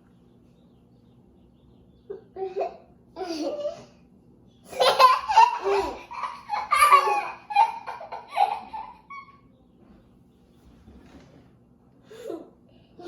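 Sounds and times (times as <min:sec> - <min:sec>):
young children laughing and squealing: 0:04.7 - 0:09.5.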